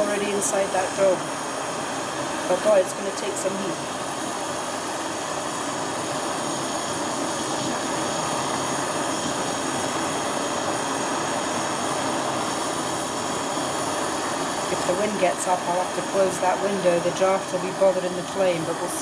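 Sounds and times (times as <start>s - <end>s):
gas torch flame roaring: 0.0s - 19.0s.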